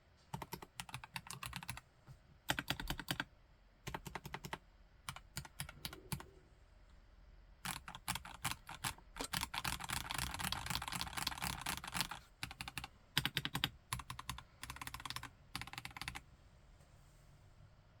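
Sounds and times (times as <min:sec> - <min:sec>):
mechanical keyboard typing: 0:00.3 - 0:01.8, 0:02.5 - 0:03.3, 0:03.9 - 0:06.3, 0:07.6 - 0:16.2.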